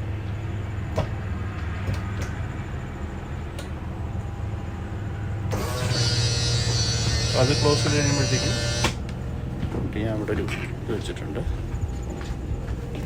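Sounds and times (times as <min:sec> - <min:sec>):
steady low hum: 0:00.0 - 0:13.0
electric motor whirring: 0:05.5 - 0:09.0.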